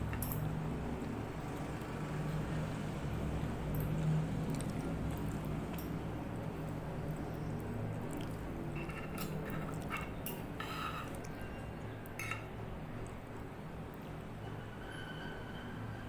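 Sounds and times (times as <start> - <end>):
steady low hum: 0.0 - 14.5
cutlery clinking against dish: 8.7 - 11.6, 12.2 - 12.5.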